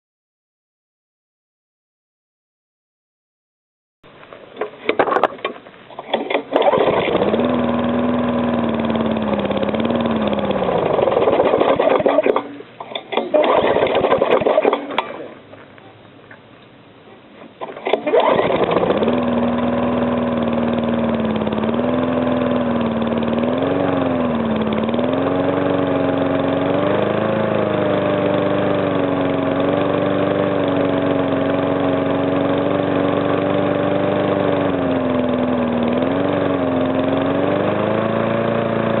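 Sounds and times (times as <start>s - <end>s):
small engine starting and running: 5.9s - 15.4s, 17.6s - 39.0s.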